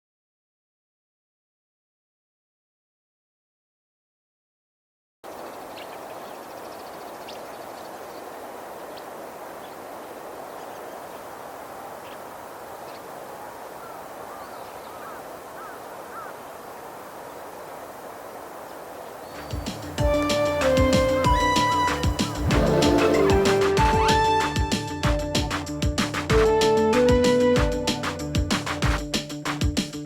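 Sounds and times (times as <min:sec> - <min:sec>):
faint bird chirps: 0:05.3 - 0:19.9
arching bird calls: 0:05.3 - 0:28.9
steady background rush: 0:19.3 - 0:29.8.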